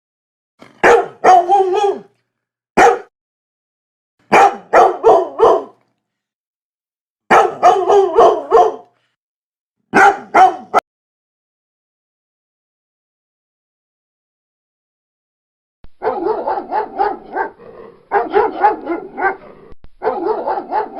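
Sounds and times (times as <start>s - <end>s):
dog barking: 0.7s - 2.2s, 2.8s - 3.1s, 4.3s - 5.8s, 7.3s - 9.0s, 9.9s - 10.8s, 16.0s - 20.9s.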